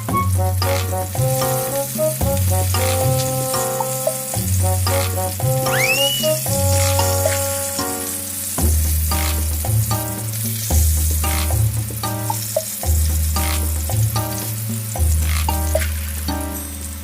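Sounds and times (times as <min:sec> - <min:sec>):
background music with bass: 0:00.0 - 0:17.0
tofu sizzling in hot oil: 0:00.3 - 0:17.0.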